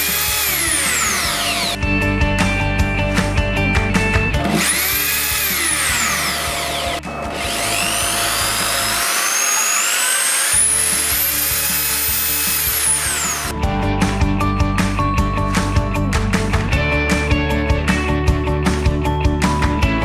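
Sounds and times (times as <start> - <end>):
drill motor spinning up and down: 0.0 - 1.8, 4.4 - 13.5
background music: 0.0 - 20.0.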